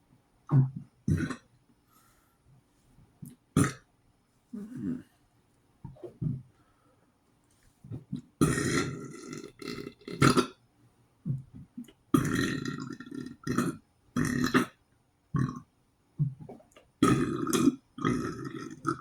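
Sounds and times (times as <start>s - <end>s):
person burping loudly: 0.5s - 1.5s, 3.6s - 3.8s, 4.6s - 5.1s, 8.2s - 10.6s, 12.2s - 14.8s, 15.4s - 15.7s, 17.0s - 19.0s.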